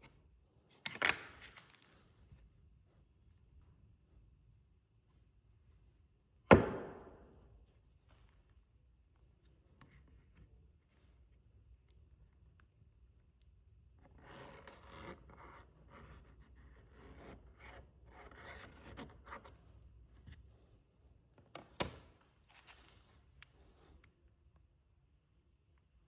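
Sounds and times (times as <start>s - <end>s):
sharp knock: 6.5s - 7.2s.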